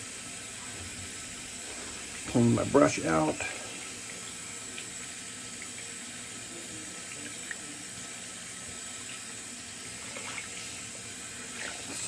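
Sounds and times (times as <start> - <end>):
shaving brush being rinsed: 0.0 - 12.0
tap water running into sink: 0.0 - 12.0.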